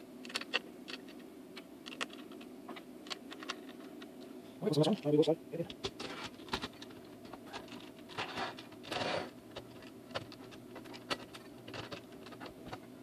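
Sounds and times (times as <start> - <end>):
scraping rustle: 5.9 - 13.0.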